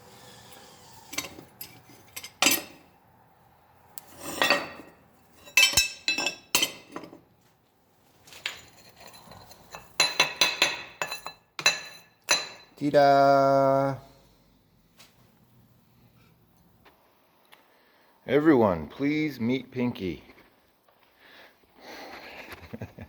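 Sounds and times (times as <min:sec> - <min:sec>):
metal parts clinking: 0:01.1 - 0:02.8.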